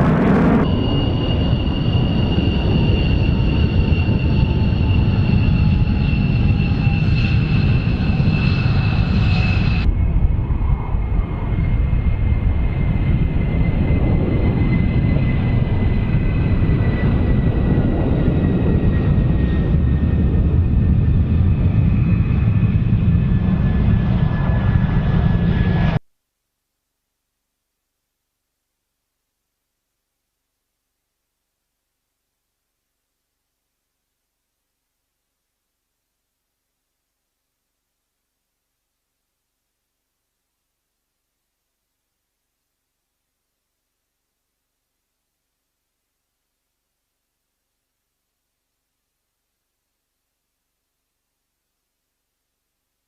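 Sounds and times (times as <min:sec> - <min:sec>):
jet engine rumble and whine: 0:00.0 - 0:26.0.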